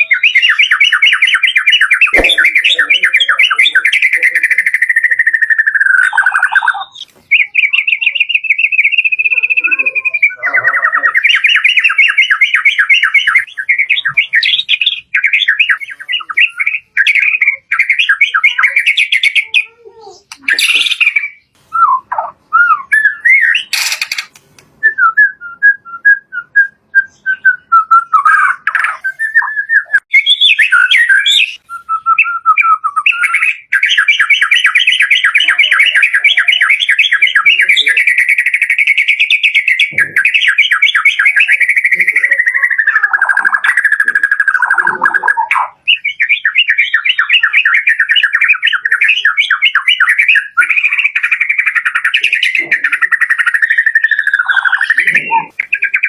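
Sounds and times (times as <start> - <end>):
bird singing whistled song: 0.0 - 24.2, 24.8 - 56.0
bird fast trill: 22.8 - 24.4, 33.0 - 56.0.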